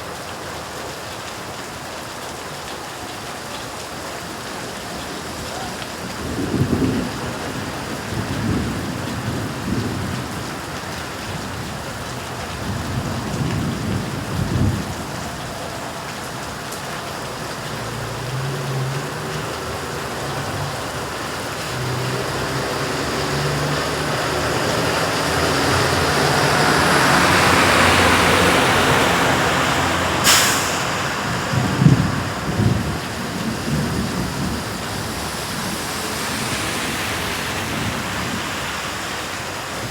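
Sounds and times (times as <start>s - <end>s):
heavy rain: 0.0s - 39.9s
low rumbles: 17.6s - 38.6s
broad rush: 21.3s - 39.9s.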